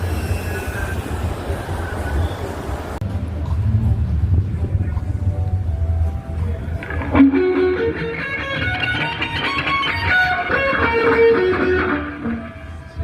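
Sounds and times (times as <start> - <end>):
electric guitar single notes: 6.0 - 13.0.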